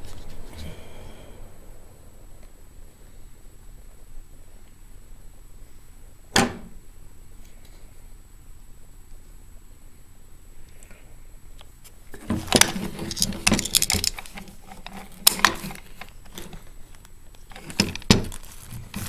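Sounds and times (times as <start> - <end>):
firearm metallic clicks and rattles: 12.5 - 16.6.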